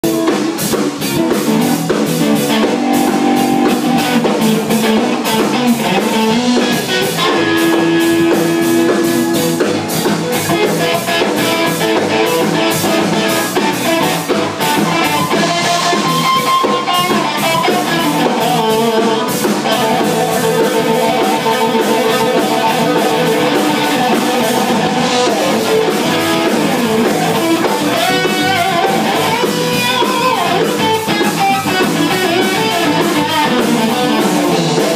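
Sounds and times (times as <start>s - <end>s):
drum kit beats: 0.0s - 34.9s
electric guitar playing: 0.0s - 34.9s.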